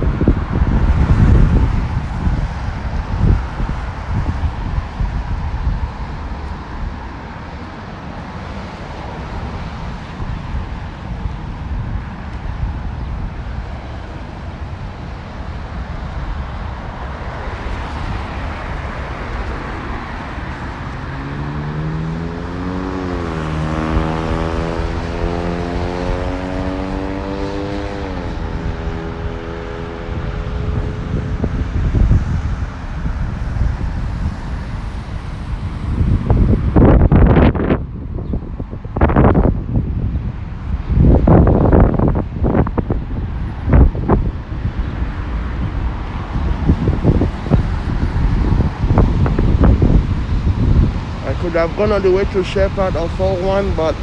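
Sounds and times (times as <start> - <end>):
road traffic noise: 0.0 - 54.0
vehicle engine accelerating: 17.6 - 32.8.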